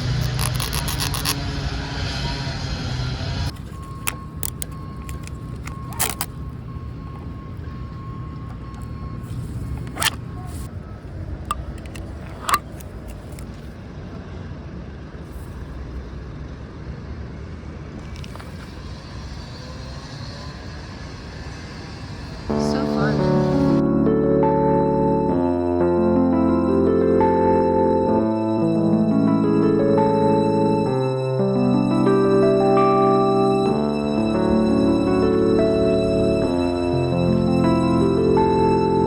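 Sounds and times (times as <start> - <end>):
motor vehicle rumble: 0.0 - 39.0
faint steady tone: 3.5 - 13.8.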